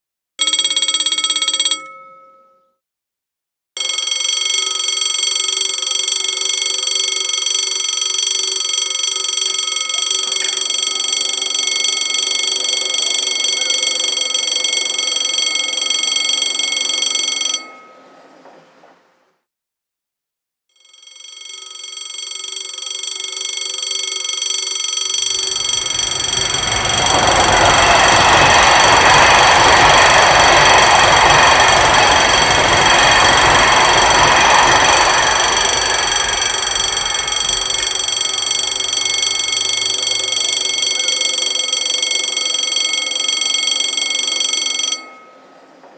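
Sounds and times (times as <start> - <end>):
level crossing bell ringing: 0.4 - 2.8, 3.8 - 18.2, 20.8 - 45.6
train passing: 9.5 - 19.4, 24.8 - 45.9.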